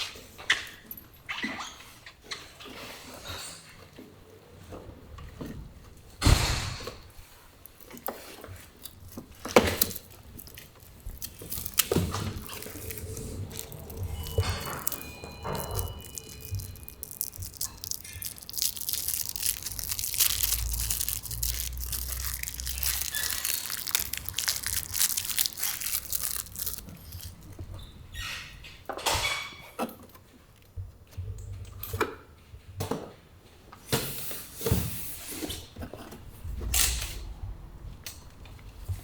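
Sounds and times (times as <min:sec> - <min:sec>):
packaging crackling: 0:07.5 - 0:27.7.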